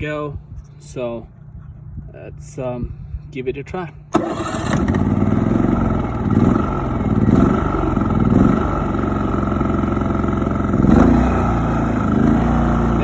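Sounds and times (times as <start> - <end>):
generator engine running: 4.1 - 13.0.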